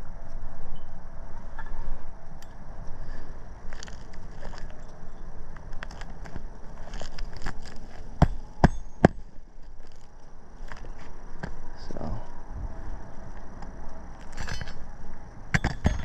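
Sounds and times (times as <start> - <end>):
shingles crackling and tapping: 3.6 - 5.0, 5.6 - 11.6.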